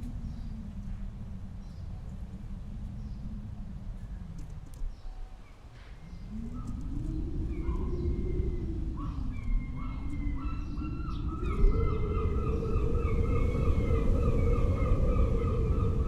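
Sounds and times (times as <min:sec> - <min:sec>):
low rushing noise: 0:05.9 - 0:16.0.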